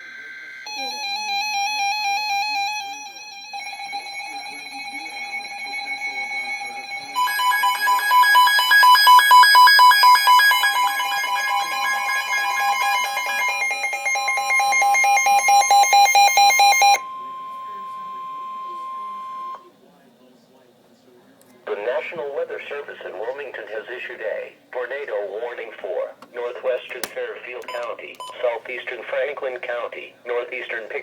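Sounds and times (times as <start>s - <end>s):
warbling electronic alert tones: 0.3s - 17.1s.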